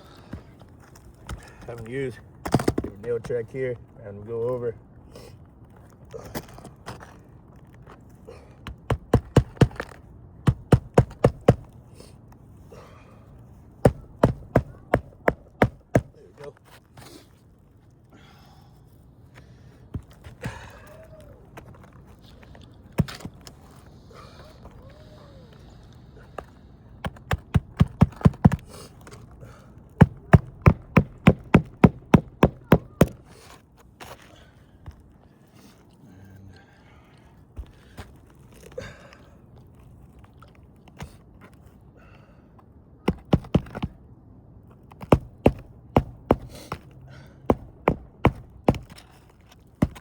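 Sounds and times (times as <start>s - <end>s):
hammer driving nails into shingles: 2.4s - 2.9s, 8.7s - 11.8s, 13.8s - 16.2s, 27.0s - 28.8s, 30.0s - 33.5s, 43.0s - 44.0s, 44.9s - 46.9s, 47.5s - 49.1s, 49.8s - 50.0s.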